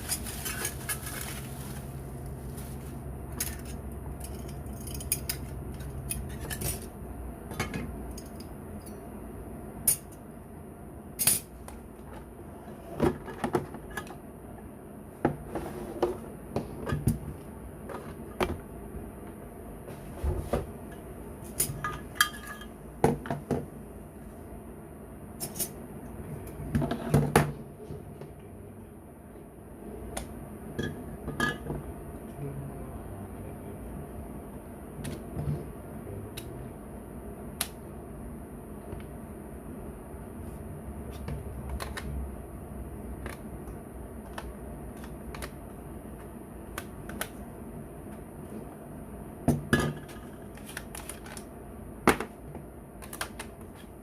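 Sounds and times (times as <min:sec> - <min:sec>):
packaging being handled: 0:00.0 - 0:03.0.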